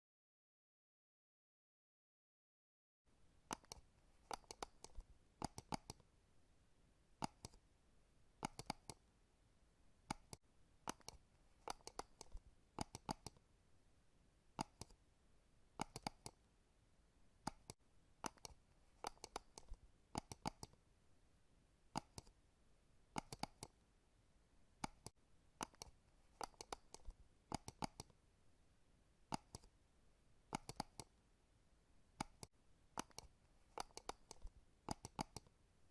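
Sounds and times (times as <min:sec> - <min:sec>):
mouse button clicking: 0:03.5 - 0:06.0, 0:07.2 - 0:07.6, 0:08.4 - 0:09.0, 0:10.1 - 0:13.4, 0:14.6 - 0:15.0, 0:15.8 - 0:16.4, 0:17.5 - 0:20.8, 0:22.0 - 0:22.3, 0:23.2 - 0:23.7, 0:24.8 - 0:28.2, 0:29.3 - 0:29.7, 0:30.5 - 0:31.1, 0:32.2 - 0:35.5.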